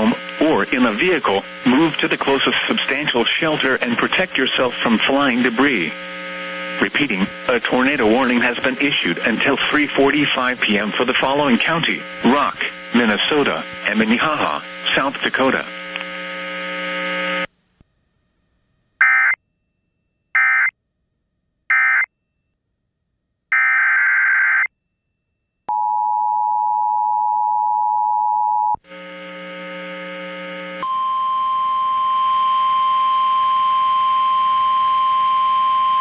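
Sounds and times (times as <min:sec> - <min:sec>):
buzzing hum: 0:00.0 - 0:17.8, 0:28.8 - 0:36.0
steady warning alarm tone: 0:20.4 - 0:20.7, 0:21.7 - 0:22.1, 0:28.6 - 0:36.0.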